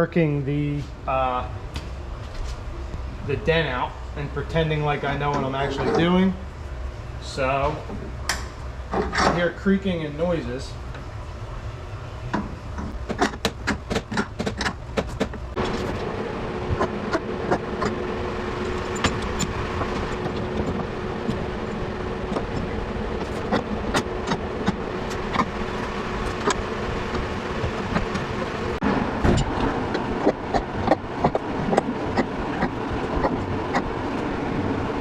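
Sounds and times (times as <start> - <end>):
steady hum: 0.0 - 35.0
sharp clicks and knocks: 12.3 - 16.0, 18.6 - 28.5, 29.2 - 33.9.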